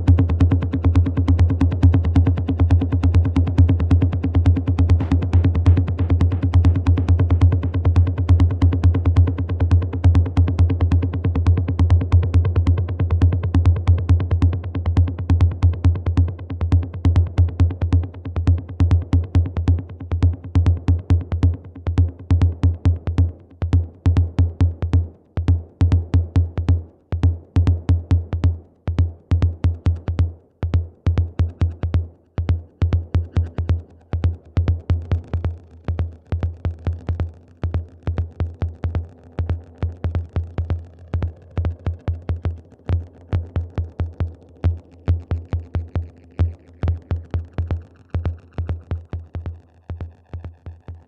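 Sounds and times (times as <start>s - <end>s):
drum machine techno beat: 0.0s - 10.9s.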